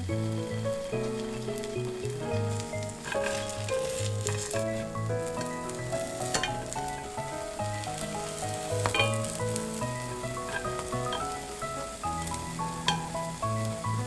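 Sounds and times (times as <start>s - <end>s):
bread sizzling in a pan: 0.0s - 14.0s
slow solo piano music: 0.0s - 14.0s.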